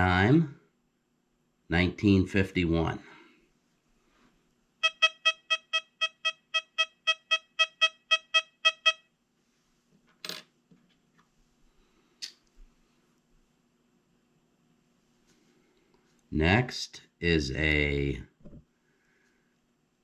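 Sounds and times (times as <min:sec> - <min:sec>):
metal detector beeps: 0:04.8 - 0:09.1.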